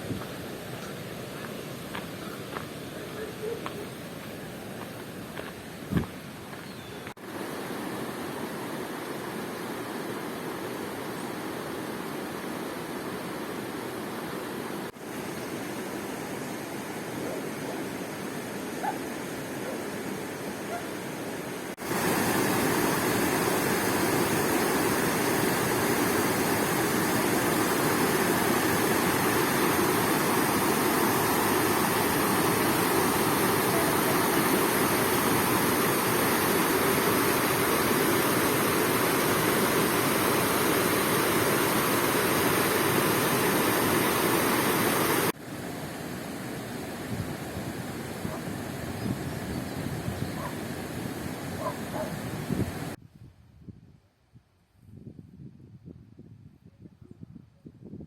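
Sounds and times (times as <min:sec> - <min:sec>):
fast-flowing water rushing: 0:07.2 - 0:48.5.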